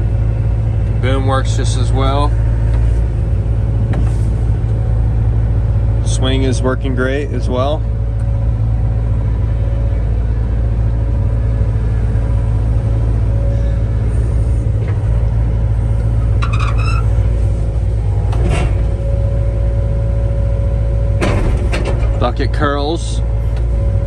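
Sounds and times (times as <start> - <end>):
excavator diesel engine drone: 0.0 - 24.0
hydraulic whine: 8.0 - 24.0
short squeak: 13.5 - 13.9, 16.3 - 17.3.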